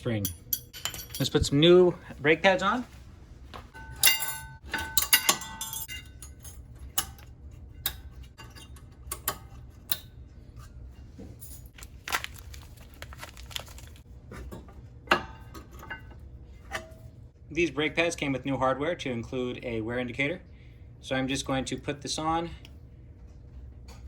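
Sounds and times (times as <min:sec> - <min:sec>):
metal brake parts clinking: 0:00.1 - 0:01.6, 0:03.8 - 0:06.6.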